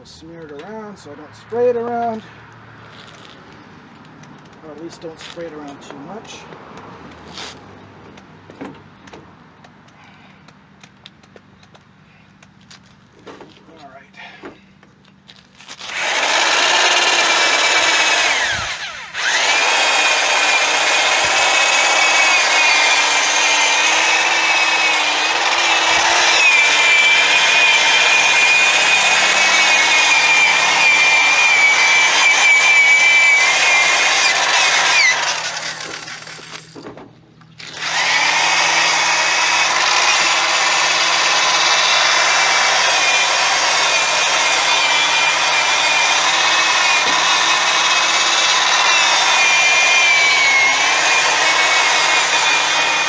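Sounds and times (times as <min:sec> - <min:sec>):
electric drill whining: 0:15.8 - 0:36.8, 0:37.6 - 0:53.0.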